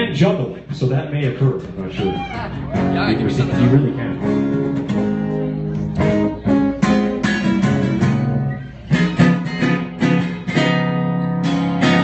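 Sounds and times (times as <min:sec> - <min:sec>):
acoustic guitar strumming chords: 0:02.6 - 0:12.0.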